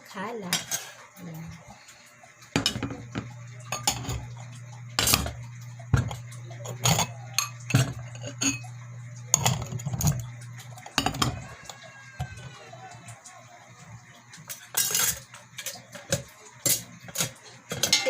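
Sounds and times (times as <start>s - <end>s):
steady low hum: 1.3s - 11.7s
dishes clinking and knocking: 2.5s - 13.2s, 14.4s - 18.0s.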